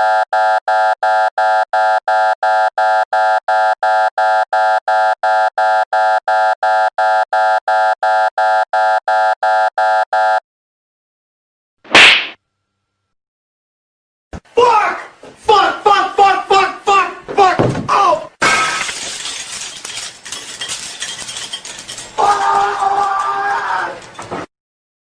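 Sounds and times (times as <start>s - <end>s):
electronic buzzer beeping: 0.0s - 10.4s.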